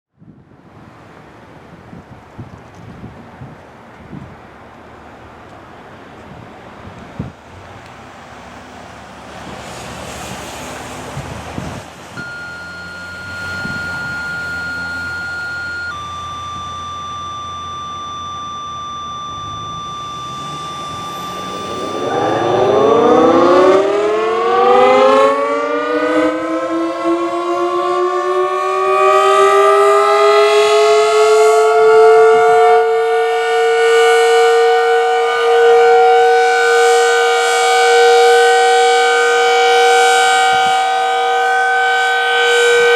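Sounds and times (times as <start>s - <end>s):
wind noise: 0.2s - 4.6s, 6.0s - 7.8s, 9.5s - 25.1s
steady electronic tones: 12.2s - 26.4s
siren winding up: 12.2s - 42.9s.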